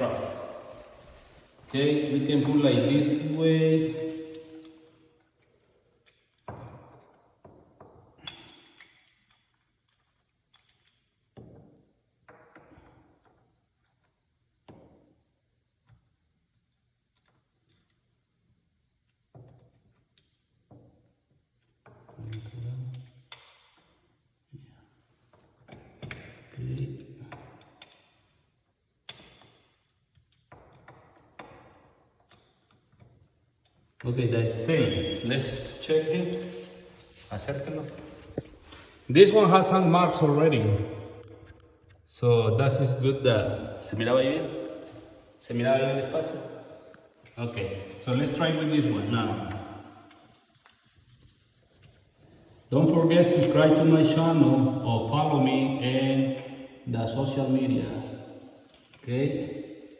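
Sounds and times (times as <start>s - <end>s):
metal clinks and knocks: 3.9s - 15.1s, 19.2s - 24.2s, 25.3s - 39.1s, 43.3s - 54.0s.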